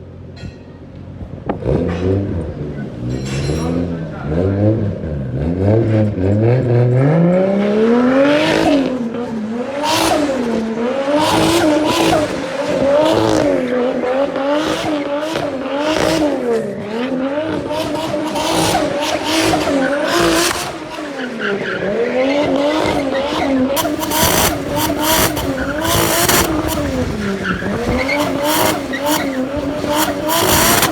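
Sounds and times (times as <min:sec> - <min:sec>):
car engine revving: 0:01.2 - 0:30.9
tyres squealing: 0:08.5 - 0:30.9.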